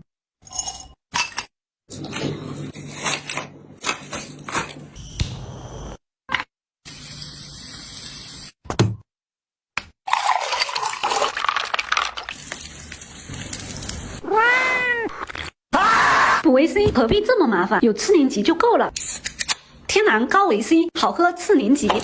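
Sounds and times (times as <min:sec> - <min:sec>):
cat meowing: 0:14.2 - 0:15.1.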